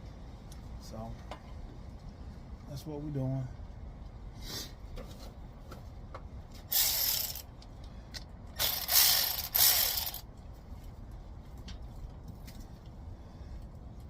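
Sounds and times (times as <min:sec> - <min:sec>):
ratchet wrench clicking: 0:06.7 - 0:07.5, 0:08.6 - 0:10.2.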